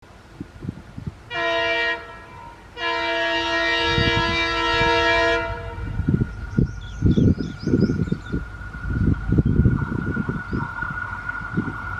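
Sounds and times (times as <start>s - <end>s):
low train rumbling: 0.0s - 11.9s
locomotive horn blasts: 1.3s - 6.1s.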